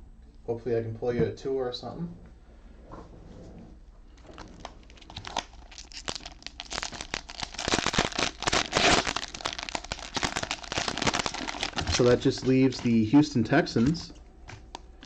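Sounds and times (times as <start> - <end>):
cellophane crinkling: 4.1 - 15.0.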